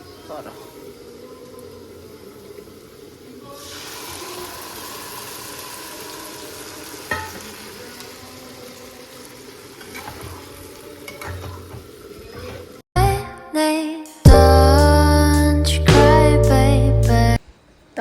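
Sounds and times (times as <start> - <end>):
food sizzling in a pan: 0.0 - 12.8
music: 13.0 - 17.4.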